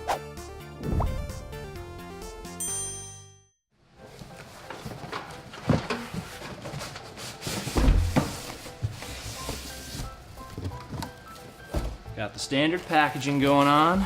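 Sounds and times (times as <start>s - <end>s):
cardboard box rustling: 4.5s - 11.9s.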